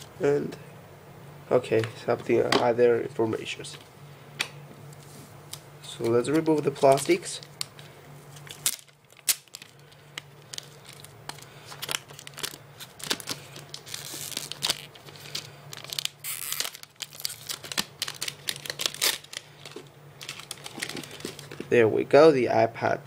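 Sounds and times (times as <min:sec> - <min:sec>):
plastic wrapping crinkling: 0:05.9 - 0:21.7.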